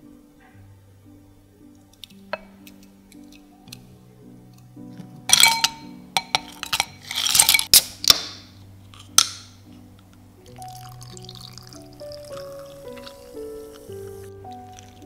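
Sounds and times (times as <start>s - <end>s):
dishes and cutlery clinking: 5.3s - 9.5s.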